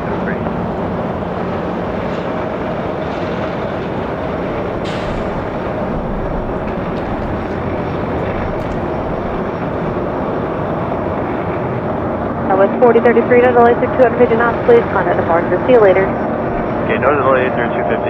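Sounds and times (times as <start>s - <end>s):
jet engines roaring: 0.0s - 18.0s.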